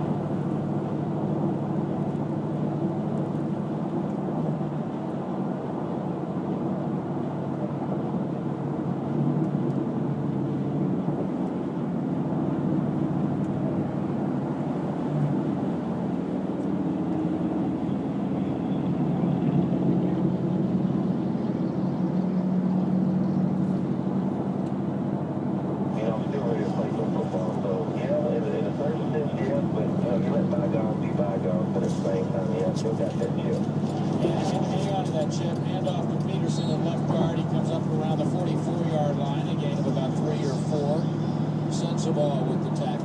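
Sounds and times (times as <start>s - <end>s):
car road and engine rumble: 0.0s - 43.0s
faint hum: 25.8s - 43.0s.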